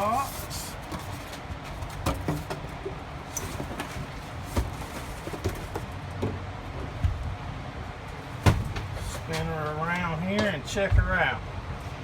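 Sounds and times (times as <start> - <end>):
cardboard box rustling: 0.1 - 6.0
knocks and thumps of compressor: 0.9 - 7.4, 8.4 - 11.3.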